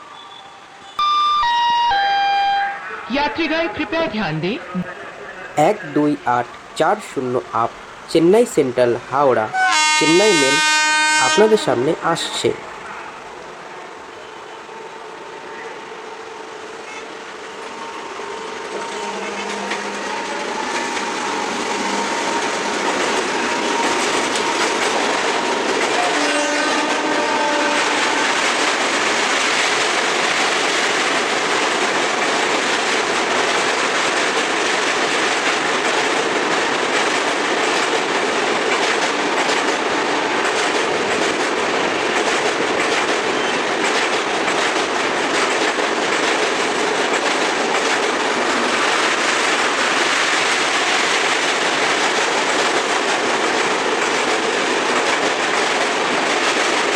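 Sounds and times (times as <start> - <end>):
locomotive horn: 1.0 - 3.0, 9.5 - 11.8, 26.0 - 28.4
train rumble: 2.9 - 56.9
train wheels clattering over rail joints: 18.4 - 56.9.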